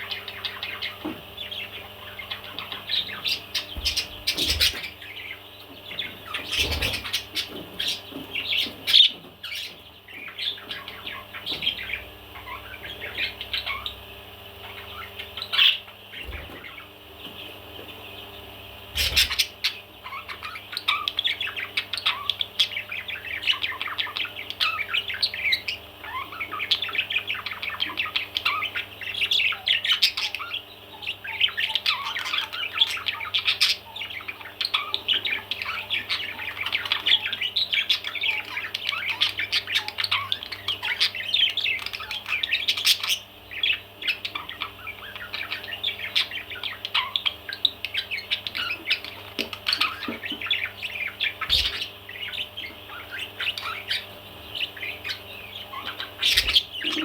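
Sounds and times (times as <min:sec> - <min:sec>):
parrot chattering: 0:19.0 - 0:43.3, 0:44.0 - 0:57.0.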